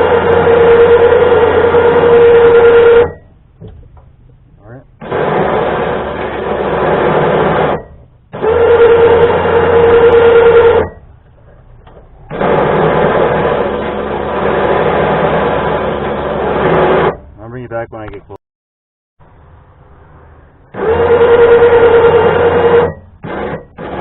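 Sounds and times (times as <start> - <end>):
electric winch motor whining: 0.0 - 3.4, 5.0 - 17.2, 20.6 - 24.0.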